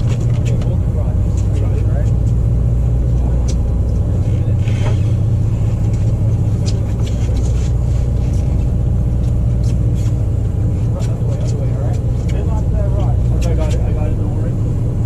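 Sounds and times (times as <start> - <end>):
boat engine droning: 0.0 - 15.0.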